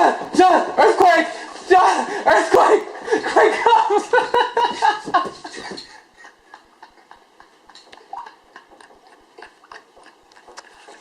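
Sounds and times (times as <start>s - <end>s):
men shouting excitedly: 0.0s - 4.2s
faint knocks and clicks: 7.1s - 11.0s.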